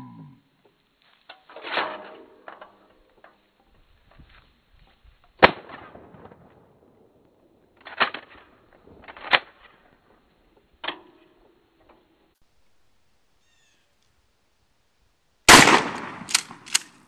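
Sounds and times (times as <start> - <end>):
shotgun shots: 5.4 - 6.8, 15.5 - 17.0.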